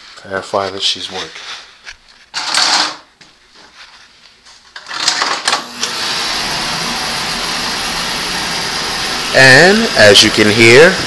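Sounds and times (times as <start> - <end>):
oil burner igniting bursts: 5.6 - 11.0
oil burner steady rushing: 5.6 - 11.0.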